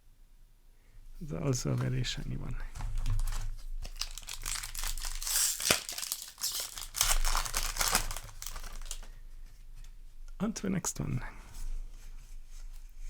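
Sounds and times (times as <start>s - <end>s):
foil wrapper crinkling: 2.8s - 9.2s.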